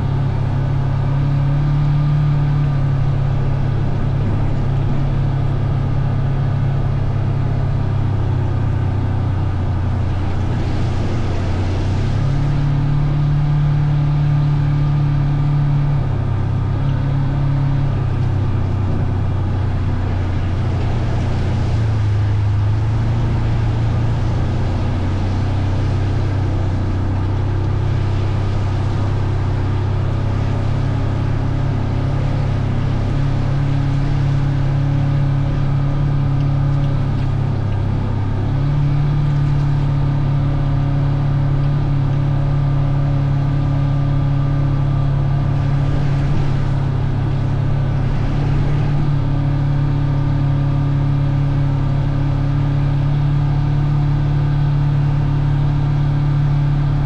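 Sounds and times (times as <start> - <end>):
vehicle engine running: 0.0 - 57.0.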